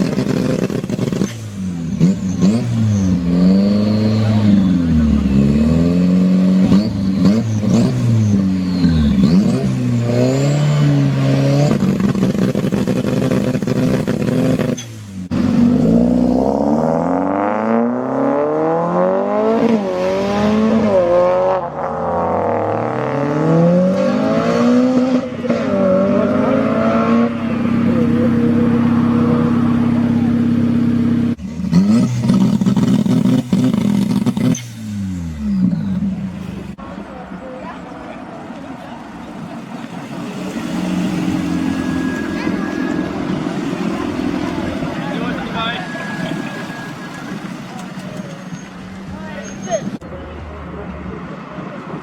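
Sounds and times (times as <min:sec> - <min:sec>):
car engines revving: 0:00.0 - 0:52.0.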